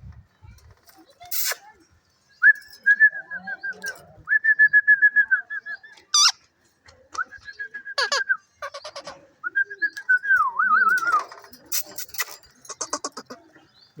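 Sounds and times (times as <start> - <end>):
parrot squawking: 6.1 - 6.4, 8.0 - 9.1, 12.6 - 13.4
parrot whistling: 8.0 - 8.2.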